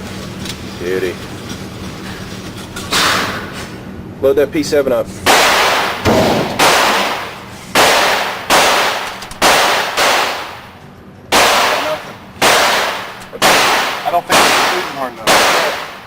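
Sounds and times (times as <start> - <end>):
gunshots with long echo: 5.3 - 16.0.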